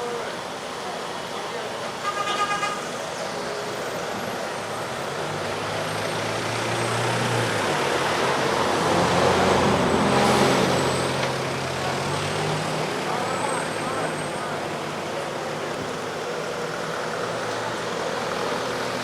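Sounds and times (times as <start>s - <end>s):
steady traffic noise: 0.0s - 19.0s
vehicle engine passing: 4.8s - 19.0s.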